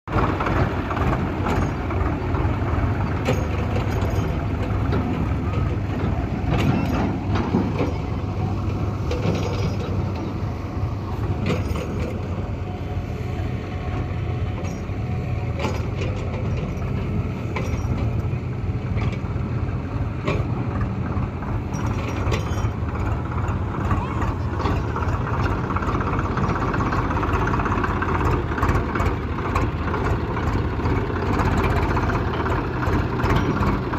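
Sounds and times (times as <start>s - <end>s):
diesel engine running: 0.0s - 33.9s
knocks and clatter: 0.1s - 12.4s, 14.5s - 19.4s, 20.2s - 33.9s.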